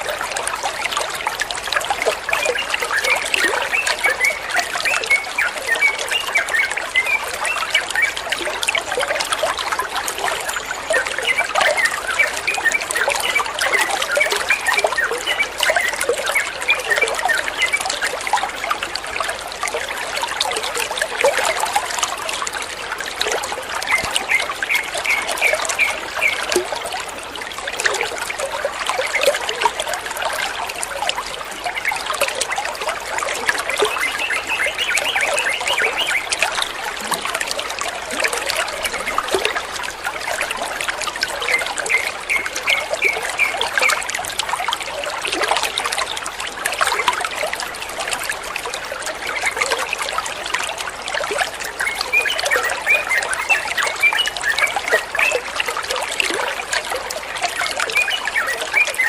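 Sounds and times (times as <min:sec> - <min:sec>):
water trickling: 0:00.0 - 0:59.0
birds chirping: 0:33.9 - 0:37.0.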